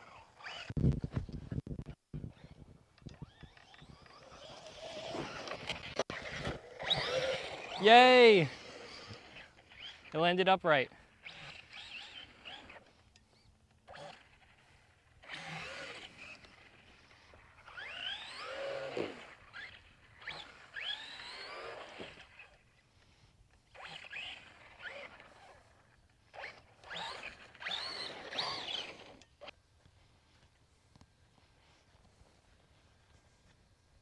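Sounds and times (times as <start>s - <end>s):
electric motor whining: 2.2s - 10.1s, 11.1s - 22.6s, 23.7s - 29.5s
tyres on dirt and gravel: 3.2s - 10.6s, 23.7s - 29.5s.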